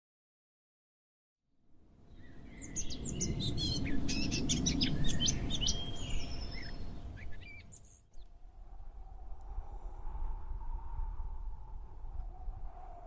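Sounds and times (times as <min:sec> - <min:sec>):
small songbirds chirping: 0:02.0 - 0:08.4.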